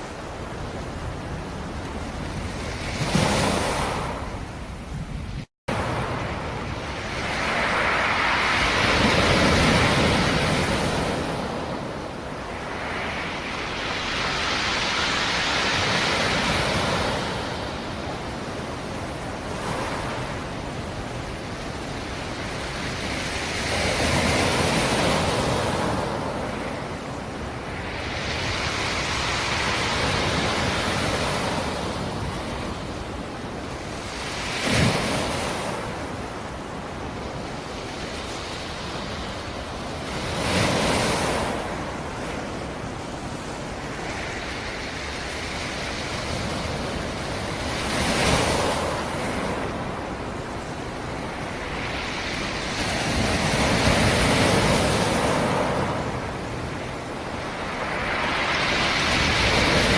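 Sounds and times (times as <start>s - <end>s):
waves breaking on shore: 0.0s - 59.9s.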